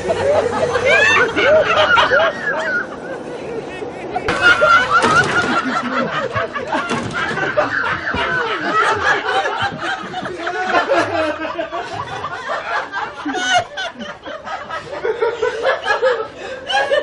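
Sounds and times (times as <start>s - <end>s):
people laughing and giggling: 0.0s - 17.0s.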